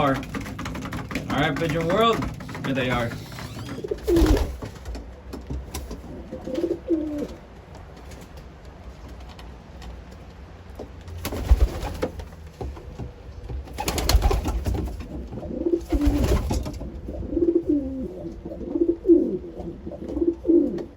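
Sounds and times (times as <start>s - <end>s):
pigeons cooing: 0.0s - 4.8s, 5.8s - 7.4s, 13.7s - 20.9s.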